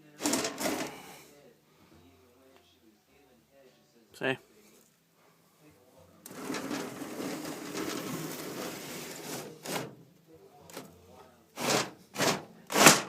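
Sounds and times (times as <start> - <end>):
wooden window sliding scrape: 6.3 - 9.9.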